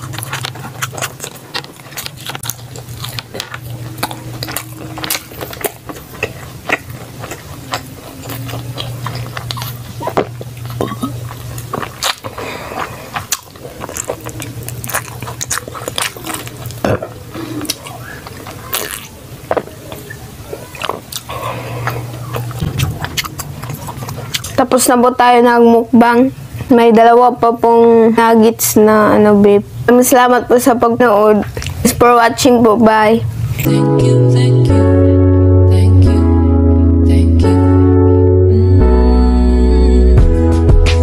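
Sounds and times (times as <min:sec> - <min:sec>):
chewing and biting food: 0:00.0 - 0:25.6, 0:31.4 - 0:32.0
low hum: 0:00.0 - 0:28.3.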